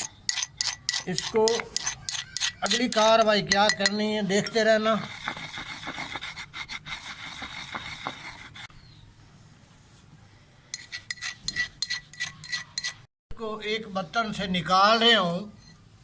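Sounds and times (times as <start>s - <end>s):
utensil scraping powder in vessel: 0.0s - 8.7s, 10.7s - 13.1s.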